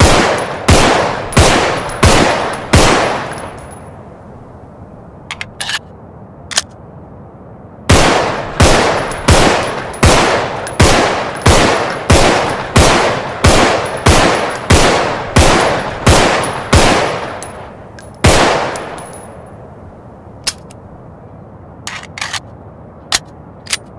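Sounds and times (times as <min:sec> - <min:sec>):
pistol shots with ringing echo: 0:00.0 - 0:03.8, 0:07.9 - 0:19.4.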